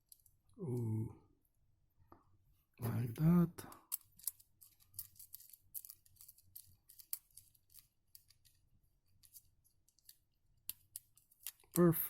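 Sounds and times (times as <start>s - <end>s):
small clicks and scrapes: 0.0s - 0.5s, 3.7s - 11.9s.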